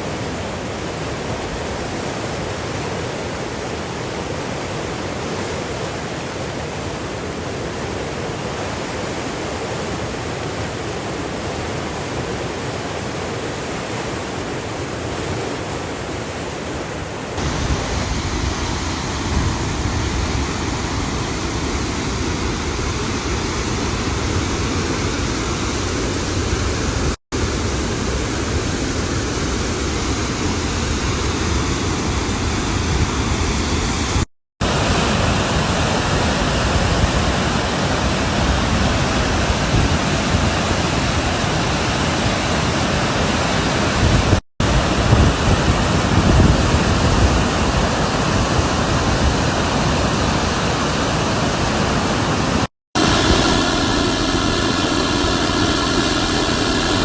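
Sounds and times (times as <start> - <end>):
floodwater rushing: 0.0 - 18.3, 49.7 - 57.0
steady noise: 15.2 - 18.2, 53.0 - 57.0.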